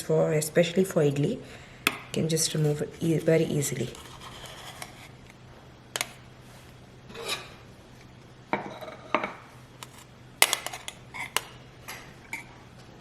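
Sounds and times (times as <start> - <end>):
spoon scraping metal plate: 2.5 - 5.2, 7.1 - 7.7, 8.6 - 11.6.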